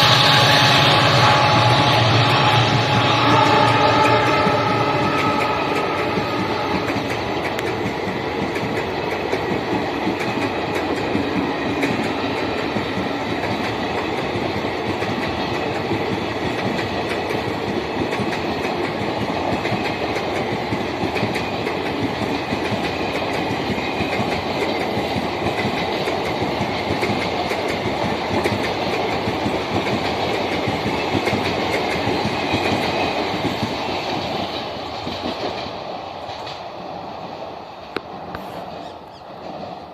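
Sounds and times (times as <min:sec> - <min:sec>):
dual-tone train horn: 0:00.0 - 0:07.7
train wheels clattering: 0:00.0 - 0:39.9.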